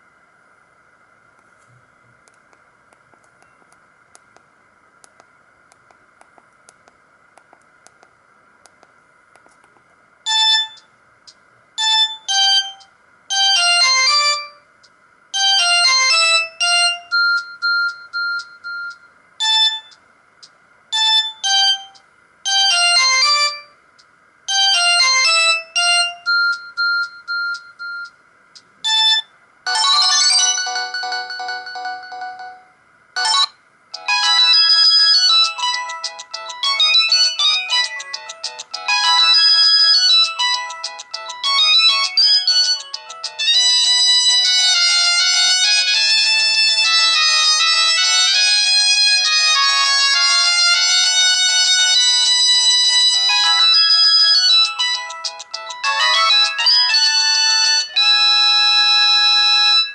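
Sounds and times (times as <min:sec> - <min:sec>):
faint hiss and hum: 0:00.0 - 0:59.9
phone ringtone synth melody: 0:10.3 - 0:10.8, 0:11.8 - 0:14.6, 0:15.4 - 0:20.0, 0:20.9 - 0:23.8, 0:24.5 - 0:28.1, 0:28.8 - 0:52.6, 0:53.3 - 0:59.9.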